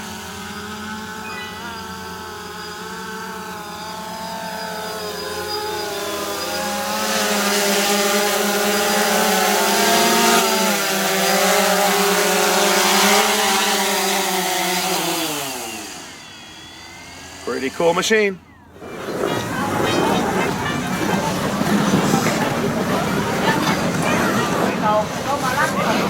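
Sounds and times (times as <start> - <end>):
drone propellers buzzing: 0.0 - 26.0.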